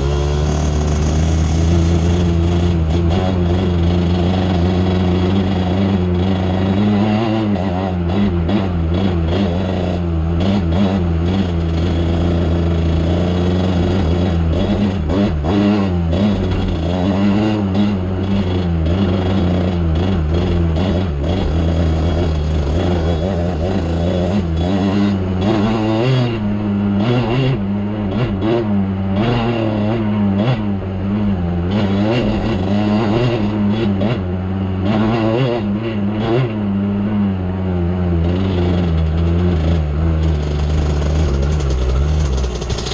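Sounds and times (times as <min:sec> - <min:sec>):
atv engine revving under load: 0:00.0 - 0:42.9
knocks and rattles over rough ground: 0:38.1 - 0:42.9.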